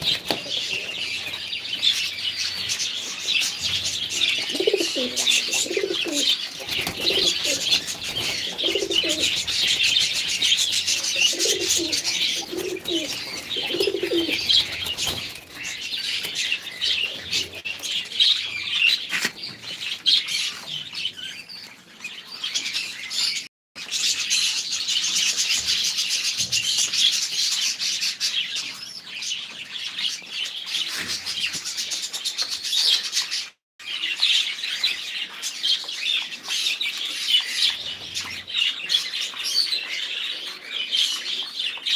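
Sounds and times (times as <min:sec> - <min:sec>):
small birds chirping and twittering: 0:00.0 - 0:41.9
dove cooing: 0:04.2 - 0:15.6.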